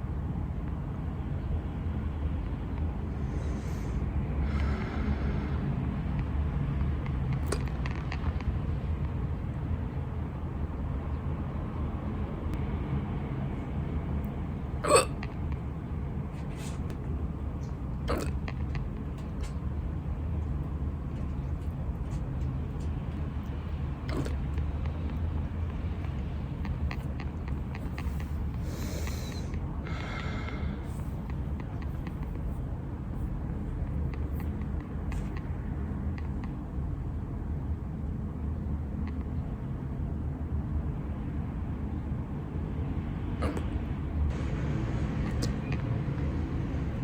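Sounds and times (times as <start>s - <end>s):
low background rumble: 0.0s - 47.0s
person hiccuping: 14.8s - 15.3s, 18.0s - 18.5s, 24.1s - 24.4s, 43.4s - 43.7s.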